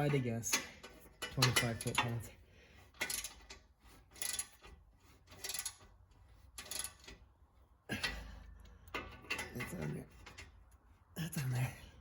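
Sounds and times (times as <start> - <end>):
torque wrench ratcheting: 3.0 - 4.7, 5.3 - 5.9, 6.6 - 7.2.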